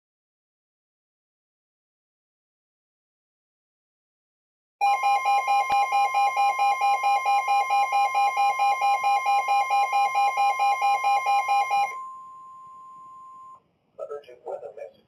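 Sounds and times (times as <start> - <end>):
steady warning alarm tone: 4.8 - 13.6
warbling alarm: 4.8 - 13.6.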